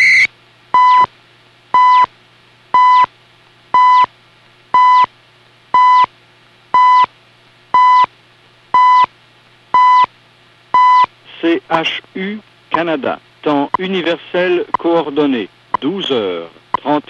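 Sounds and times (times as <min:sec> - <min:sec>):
time signal beeps: 0:00.0 - 0:01.1, 0:01.8 - 0:02.1, 0:02.8 - 0:03.1, 0:03.8 - 0:04.1, 0:04.8 - 0:05.1, 0:05.8 - 0:06.1, 0:06.8 - 0:07.1, 0:07.8 - 0:08.1, 0:08.8 - 0:09.1, 0:09.8 - 0:10.1, 0:10.8 - 0:11.1
faint radio hiss: 0:10.2 - 0:17.0.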